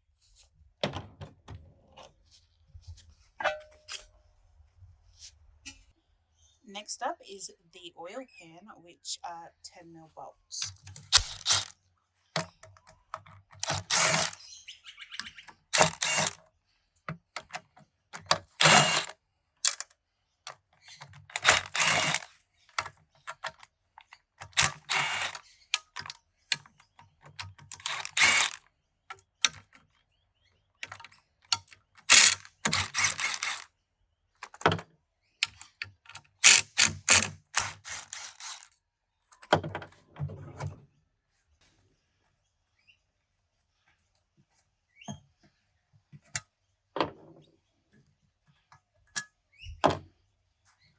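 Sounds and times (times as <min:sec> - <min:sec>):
socket ratchet clicking: 0:10.7 - 0:11.7, 0:13.6 - 0:14.4, 0:15.8 - 0:16.4, 0:18.2 - 0:19.8, 0:21.3 - 0:22.3, 0:24.5 - 0:26.1, 0:27.6 - 0:28.6, 0:31.6 - 0:33.6, 0:36.4 - 0:38.7.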